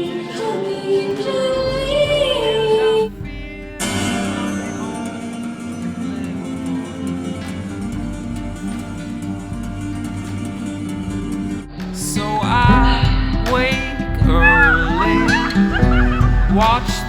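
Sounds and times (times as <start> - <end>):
acoustic guitar picking: 0.0 - 17.0
person singing: 0.0 - 17.0.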